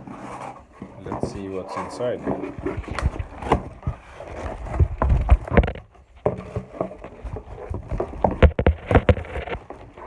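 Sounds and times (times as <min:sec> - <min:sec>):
cardboard parcel being opened: 0:00.0 - 0:10.0
knocks and thumps: 0:02.3 - 0:09.8.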